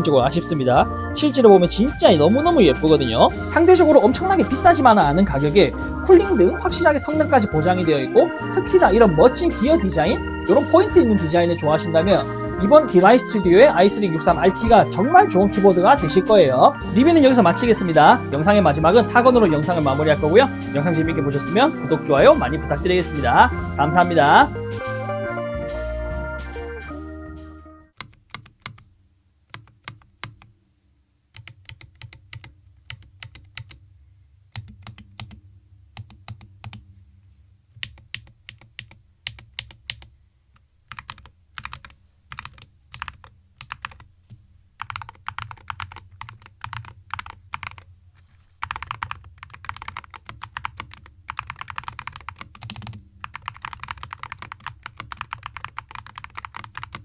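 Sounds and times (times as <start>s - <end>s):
mechanical keyboard typing: 28.0s - 28.9s, 29.5s - 30.6s, 31.3s - 33.8s, 34.5s - 35.4s, 36.0s - 36.8s, 37.8s - 40.1s, 40.9s - 44.1s, 44.8s - 47.9s, 48.6s - 57.0s.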